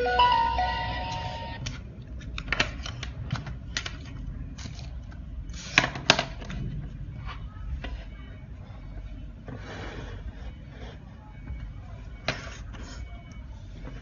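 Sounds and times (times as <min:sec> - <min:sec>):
background music: 0:00.0 - 0:01.6.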